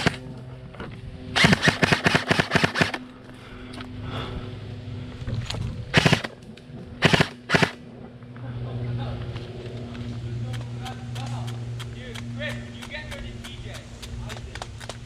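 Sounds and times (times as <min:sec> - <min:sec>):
airsoft rifle shots: 0:00.0 - 0:00.2, 0:01.4 - 0:03.0, 0:05.9 - 0:06.4, 0:07.0 - 0:07.8.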